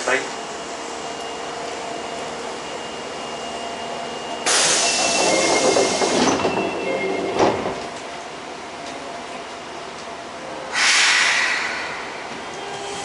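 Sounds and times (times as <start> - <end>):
subway car hum: 0.0 - 13.0
loud air hiss: 4.4 - 5.2, 10.7 - 13.0
subway doors thumping shut: 4.4 - 8.2.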